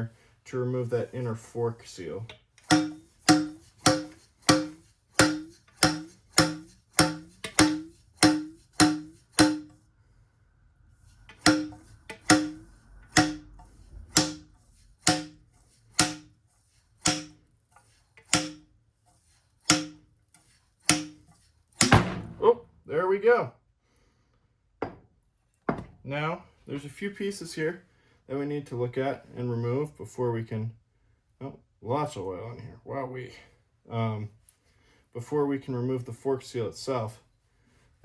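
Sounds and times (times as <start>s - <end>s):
metal clunks with short ring: 2.6s - 9.8s, 11.3s - 14.5s, 21.8s - 22.6s.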